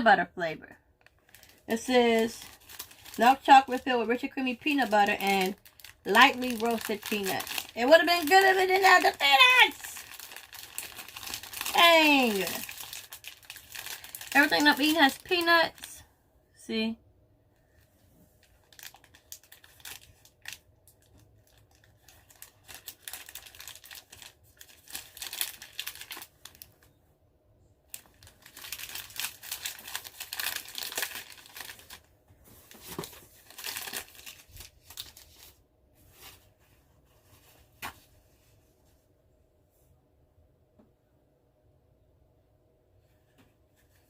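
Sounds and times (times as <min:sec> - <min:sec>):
plastic wrapper crinkling: 0:01.0 - 0:15.9, 0:18.4 - 0:26.9, 0:27.9 - 0:36.6.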